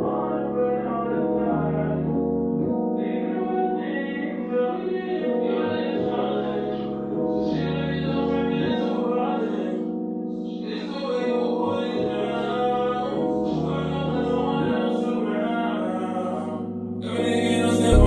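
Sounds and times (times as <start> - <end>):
slow keyboard song: 0.0 - 18.0
person singing: 3.0 - 9.9, 10.5 - 18.0.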